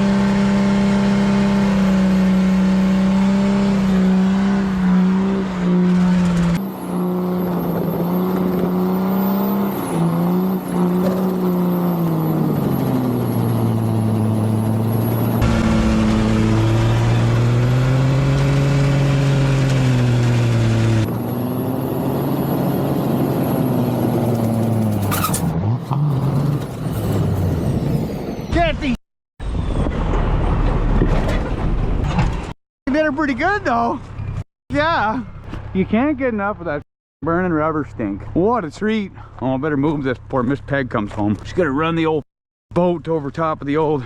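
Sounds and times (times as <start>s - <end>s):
car engine revving high: 0.0s - 24.9s
tires spinning: 0.0s - 28.5s.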